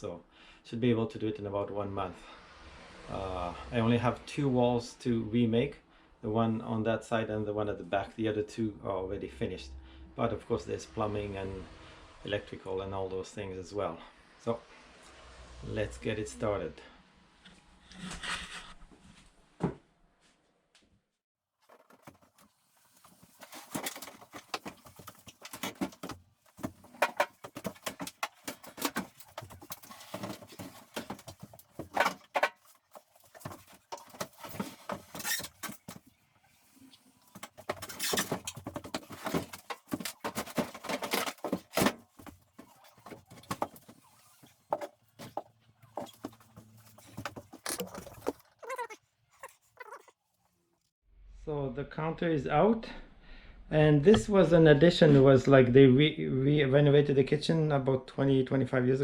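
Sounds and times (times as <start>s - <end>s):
knocking clattering and scraping: 21.6s - 50.1s.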